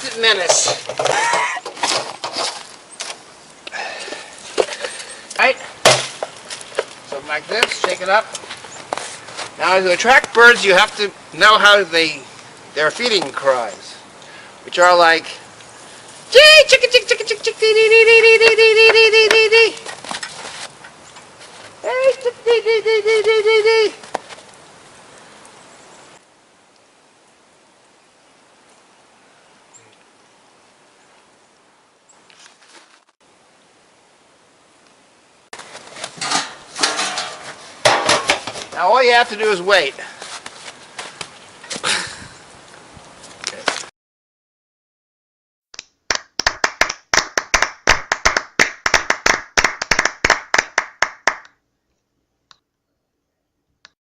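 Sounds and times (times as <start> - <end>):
faint outdoor background hiss: 0.0 - 43.9, 45.8 - 54.0
rapid hand clapping: 46.1 - 51.6.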